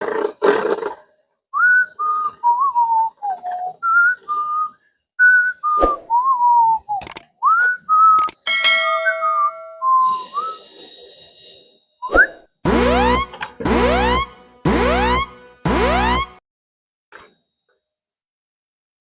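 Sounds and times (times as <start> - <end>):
person whistling a tune: 1.6 - 8.3, 9.0 - 10.9, 12.0 - 12.4
sharp click: 7.0 - 7.3, 8.2 - 8.4.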